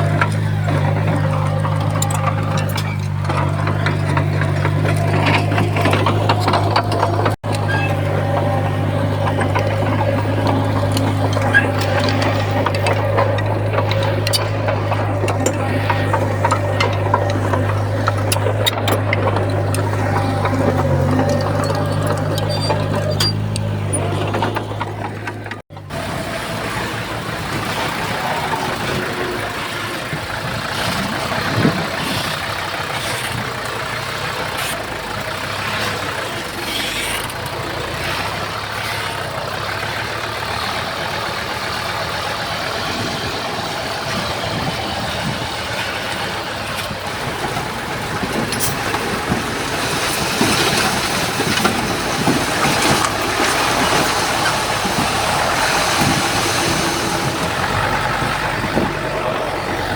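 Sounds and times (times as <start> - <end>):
metal knocks and clanks: 0.0 - 25.9
heavy diesel engine running: 0.0 - 59.9.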